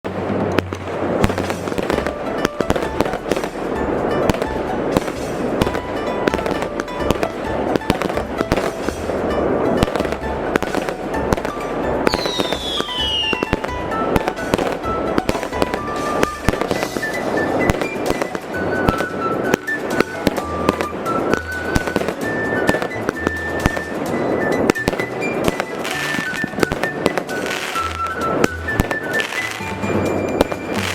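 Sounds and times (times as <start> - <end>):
firecrackers crackling: 0.0 - 30.9
fireworks bangs: 0.0 - 30.9
high falling whistle: 12.1 - 13.7, 15.8 - 30.9.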